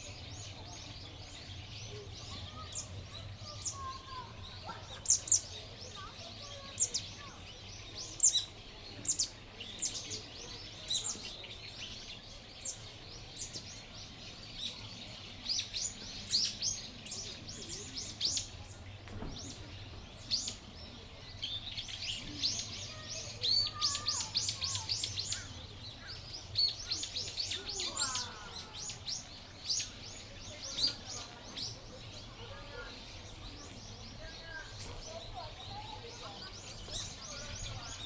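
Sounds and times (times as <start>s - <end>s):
small birds chirping: 0.0s - 38.0s.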